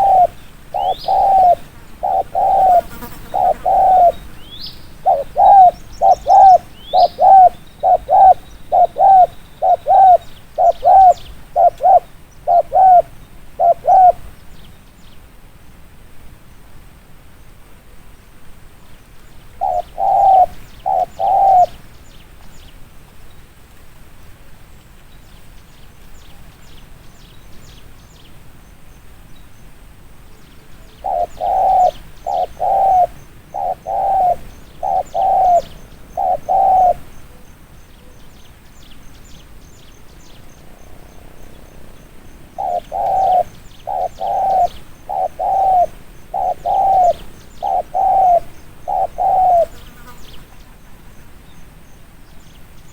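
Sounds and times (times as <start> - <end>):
dove cooing: 0.0 - 14.3, 19.6 - 21.8, 30.8 - 37.5, 40.4 - 49.9
small birds chirping: 0.0 - 15.2, 18.9 - 23.4, 25.1 - 52.9.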